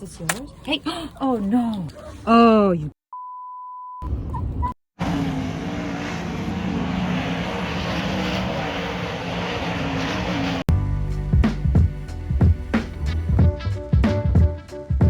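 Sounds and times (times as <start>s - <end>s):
airplane engines droning: 4.0s - 10.7s.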